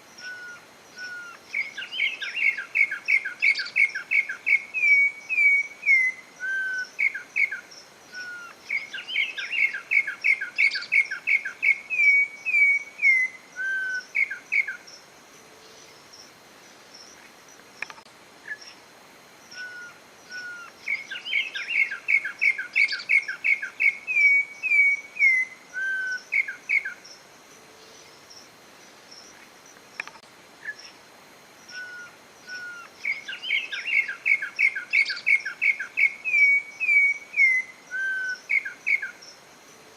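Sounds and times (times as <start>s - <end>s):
bird singing whistled notes: 0.2s - 15.0s, 19.5s - 27.2s, 31.7s - 39.4s.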